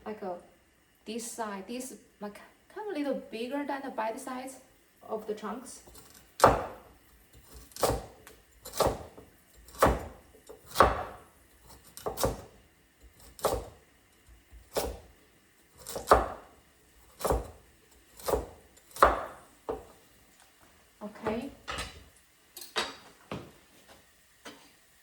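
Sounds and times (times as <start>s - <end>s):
knife chopping on cutting board: 5.9s - 13.8s, 14.5s - 15.1s, 15.8s - 17.6s, 18.2s - 19.9s.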